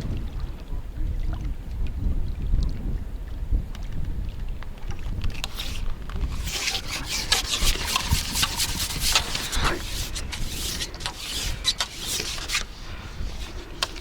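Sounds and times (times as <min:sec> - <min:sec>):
wind rumbling on microphone: 0:00.0 - 0:14.0
rustling and rubbing strokes: 0:05.3 - 0:14.0.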